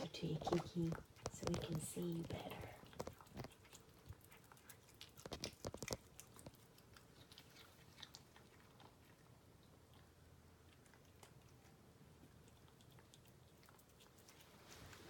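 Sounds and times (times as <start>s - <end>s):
cat chewing raw meat: 0.0s - 15.0s.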